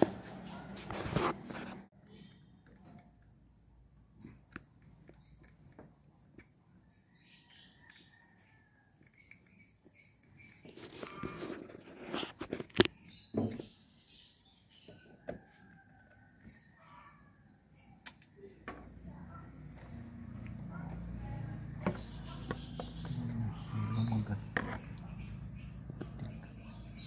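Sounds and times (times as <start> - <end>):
multimeter short high beeps: 2.0 - 3.2, 4.8 - 5.8, 7.5 - 8.0, 10.2 - 13.1.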